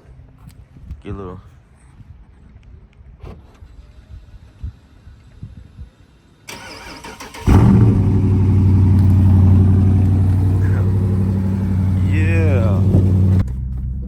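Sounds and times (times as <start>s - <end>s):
car engine cranking and starting: 6.5s - 13.6s
loud engine fast idle: 6.6s - 13.4s.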